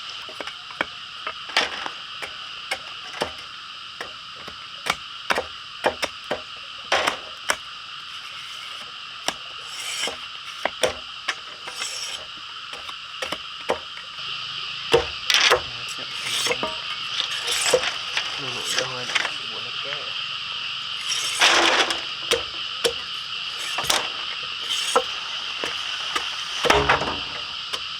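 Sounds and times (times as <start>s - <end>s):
steady high buzzing: 0.0s - 27.9s
wooden knocks and clicks: 24.9s - 27.9s.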